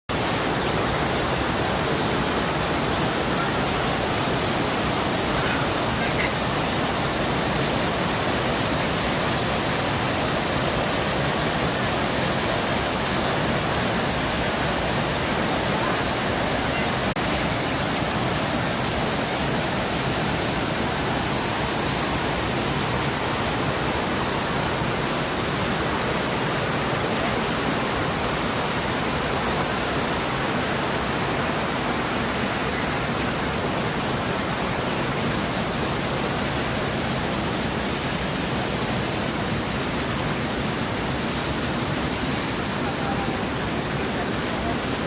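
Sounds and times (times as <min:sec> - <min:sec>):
waterfall rushing: 0:00.1 - 0:45.0.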